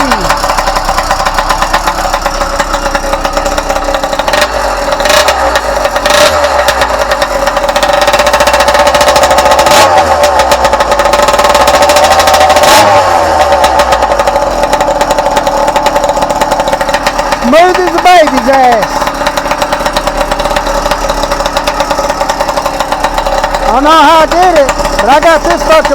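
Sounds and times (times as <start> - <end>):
exhaust cracks: 0.0 - 25.9
small engine revving: 0.0 - 25.9
man talking: 17.4 - 19.0, 23.6 - 25.9.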